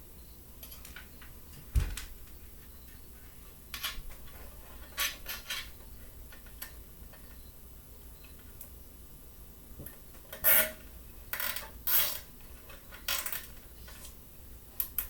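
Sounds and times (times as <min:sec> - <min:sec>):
low thump: 0:01.7 - 0:02.1.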